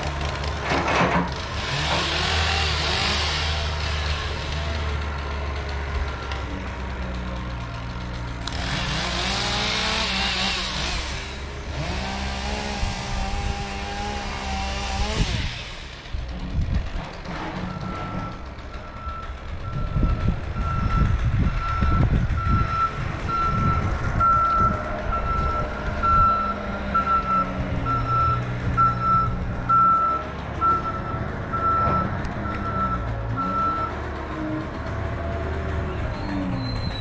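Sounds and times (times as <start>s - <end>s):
diesel engine running: 0.0s - 37.0s
reversing alarm beeping: 17.7s - 34.0s.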